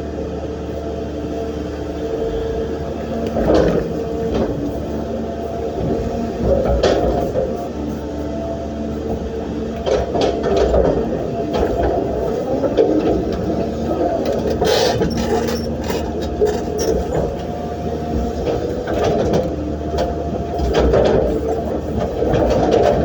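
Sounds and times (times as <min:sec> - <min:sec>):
excavator diesel engine running: 0:00.0 - 0:23.0.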